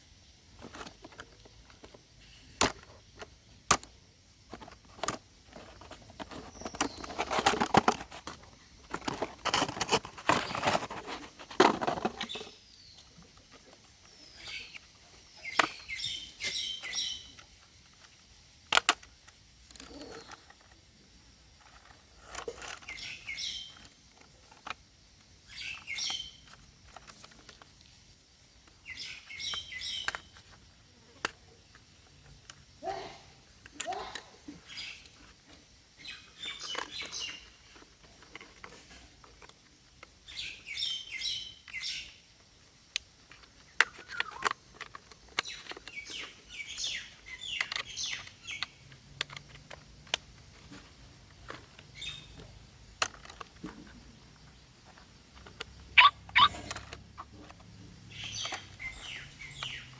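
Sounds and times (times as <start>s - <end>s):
rustling: 4.4s - 18.2s, 43.2s - 59.9s
short high chirping: 56.0s - 56.7s.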